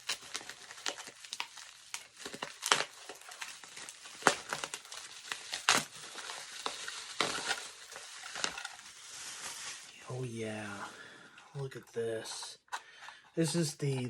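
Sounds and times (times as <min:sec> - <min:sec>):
packing material crinkling: 0:00.0 - 0:10.8.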